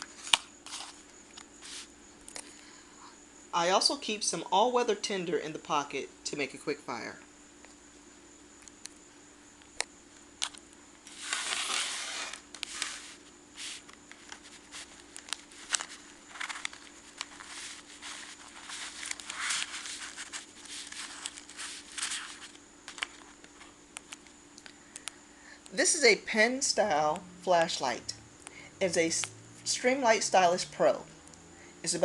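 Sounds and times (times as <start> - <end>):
packaging crinkling and rustling: 10.4 - 23.7.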